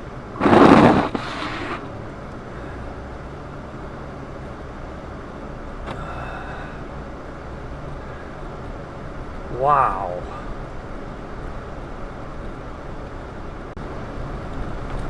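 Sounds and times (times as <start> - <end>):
car engine and road rumble: 0.0 - 15.0
loud burst of noise: 0.4 - 1.9.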